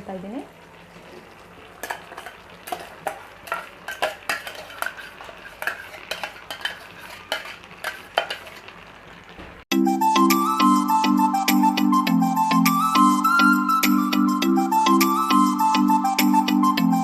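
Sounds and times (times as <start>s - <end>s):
faint sizzle: 0.0s - 9.7s
spoon stirring and scraping a pot: 1.2s - 8.7s
music: 9.7s - 17.0s.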